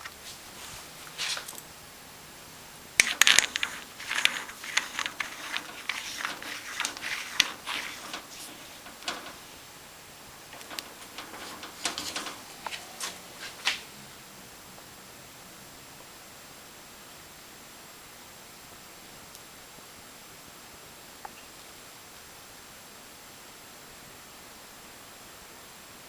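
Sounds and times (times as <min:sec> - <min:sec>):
small hard parts clinking: 0:03.0 - 0:13.6.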